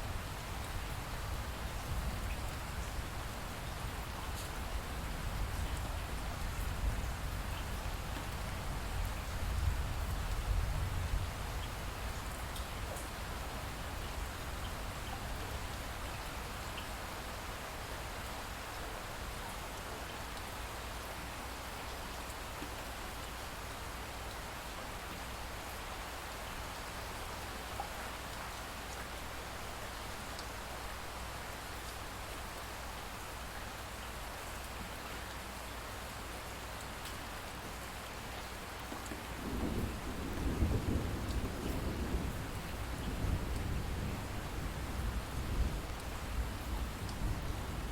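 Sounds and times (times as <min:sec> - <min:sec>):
light rain with drips: 0:00.0 - 0:47.9
distant thunder rumble: 0:39.4 - 0:46.0.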